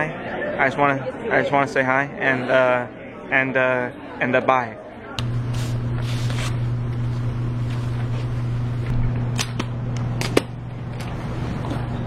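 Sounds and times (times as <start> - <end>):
steady low hum: 5.2 - 12.0.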